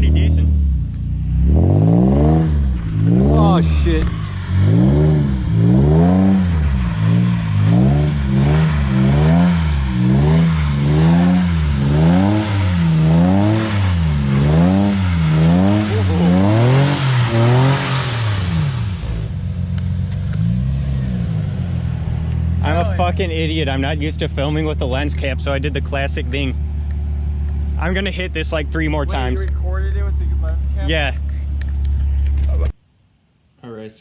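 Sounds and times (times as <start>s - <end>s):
car engine revving: 0.0s - 32.7s.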